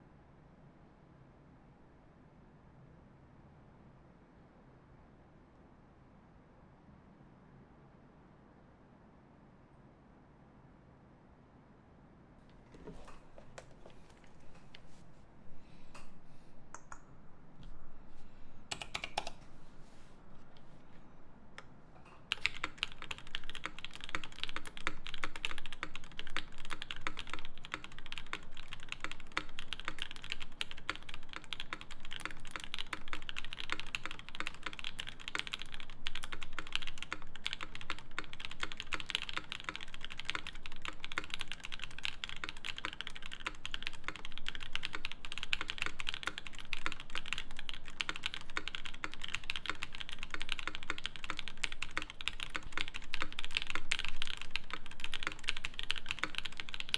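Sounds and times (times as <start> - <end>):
mechanical keyboard typing: 18.7 - 19.5, 22.2 - 56.9.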